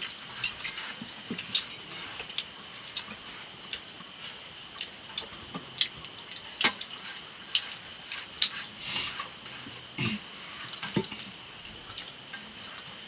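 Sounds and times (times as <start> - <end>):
sharp drip-like clicks: 4.8 - 7.7.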